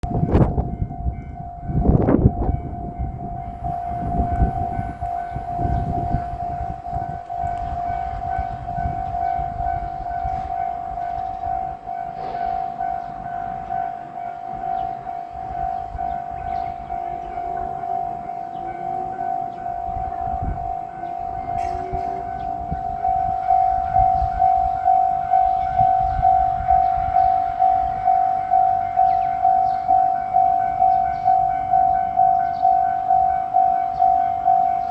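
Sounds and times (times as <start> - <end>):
uneven low rumble: 0.0 - 12.6
level-crossing alarm bell: 0.0 - 34.9.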